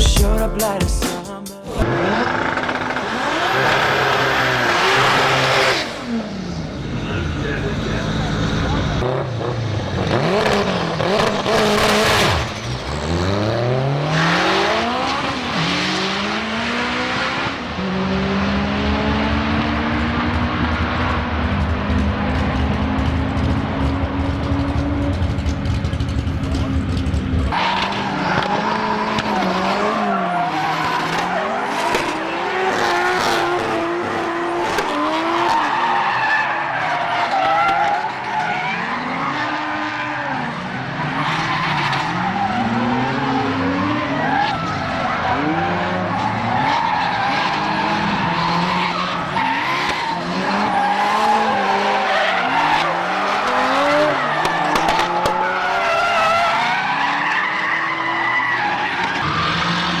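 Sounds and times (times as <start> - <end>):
car engines revving: 1.8 - 60.0
tire squeal: 1.9 - 9.0, 20.6 - 60.0.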